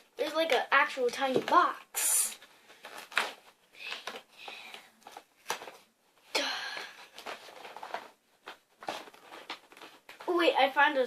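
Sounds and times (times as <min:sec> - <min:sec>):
packaging rustling and scraping: 0:02.3 - 0:04.3, 0:07.0 - 0:10.4.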